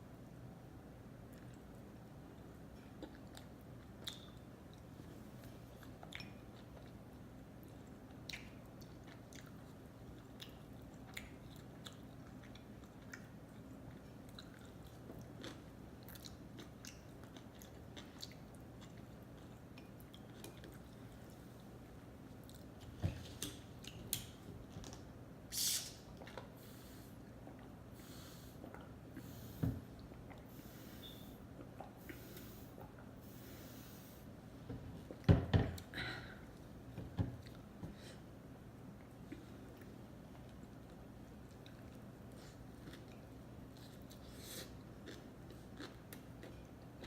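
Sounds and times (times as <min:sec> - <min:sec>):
person chewing: 0:07.6 - 0:21.7, 0:39.0 - 0:47.0.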